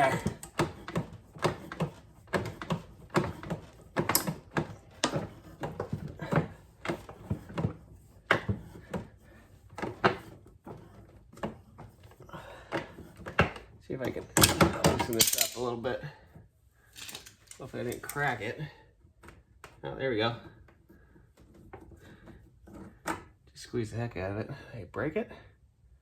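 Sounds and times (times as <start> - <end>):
metal clicks and knocks: 0.0 - 7.7, 12.7 - 15.8, 17.0 - 18.4.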